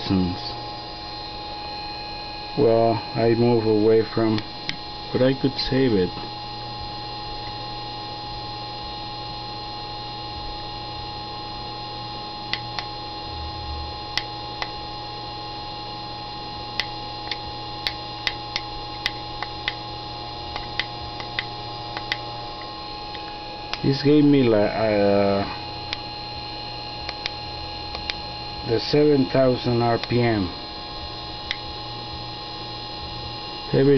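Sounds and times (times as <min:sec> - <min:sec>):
small electric motor humming: 0:00.0 - 0:33.9
sharp clicks: 0:16.8 - 0:19.8, 0:20.5 - 0:22.3, 0:27.0 - 0:28.2.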